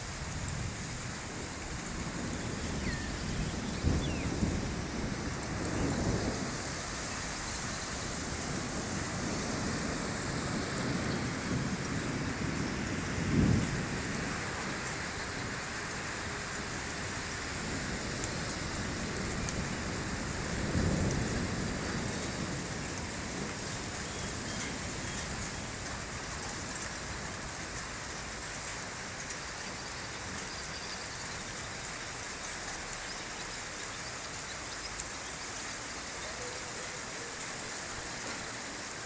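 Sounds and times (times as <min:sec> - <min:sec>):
heavy rain pouring: 0:00.0 - 0:39.0
low rumbles of thunder: 0:00.1 - 0:29.3.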